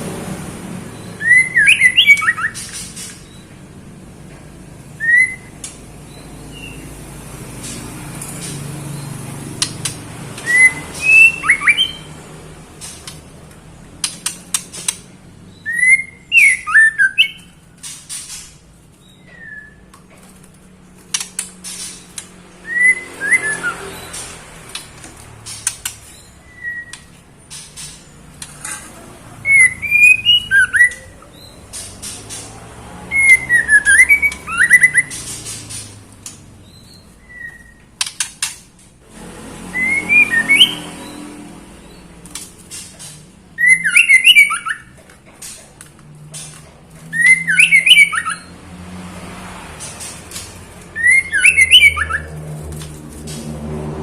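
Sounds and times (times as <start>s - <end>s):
bird whistling and squawking: 1.1s - 3.4s, 5.0s - 5.5s, 10.4s - 12.1s, 15.5s - 17.5s, 19.1s - 19.9s, 22.6s - 24.2s, 26.1s - 27.2s, 29.4s - 31.6s, 33.1s - 35.9s, 36.6s - 37.8s, 39.7s - 41.2s, 43.6s - 44.9s, 47.1s - 48.5s, 50.9s - 52.4s.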